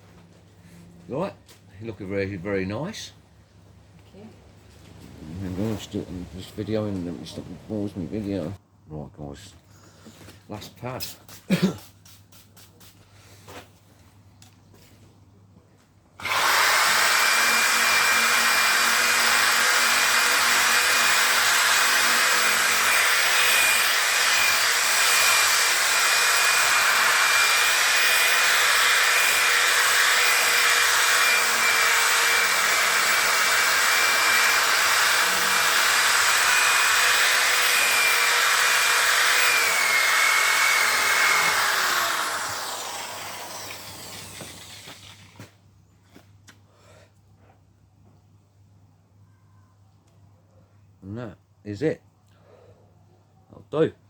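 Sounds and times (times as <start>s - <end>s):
power tool buffing: 16.2s - 45.4s.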